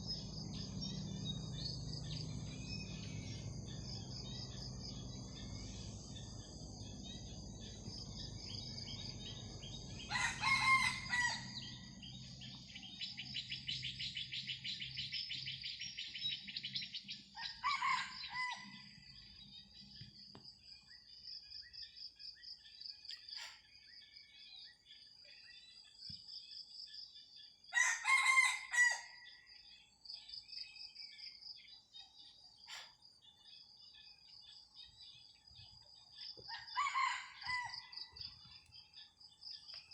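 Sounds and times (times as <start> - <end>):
rooster crowing: 10.0 - 11.9, 17.4 - 18.8, 27.7 - 29.3, 36.5 - 38.0.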